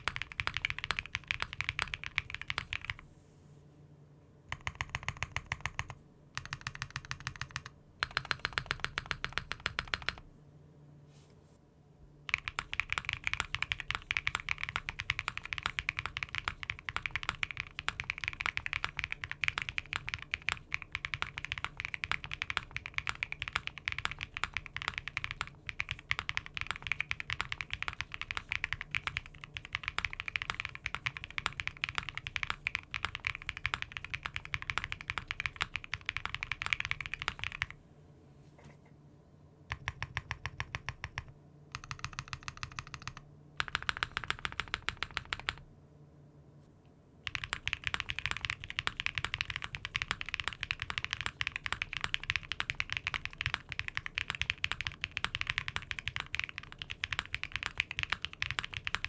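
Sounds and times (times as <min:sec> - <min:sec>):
typing on mechanical keyboard: 0:00.0 - 0:03.0, 0:04.5 - 0:10.3, 0:12.3 - 0:37.8, 0:39.7 - 0:45.6, 0:47.2 - 0:59.0.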